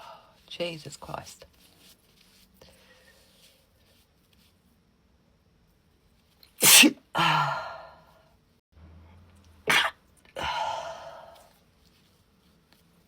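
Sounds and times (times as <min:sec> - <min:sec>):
woman sneezing: 0:06.6 - 0:07.6, 0:09.7 - 0:10.8.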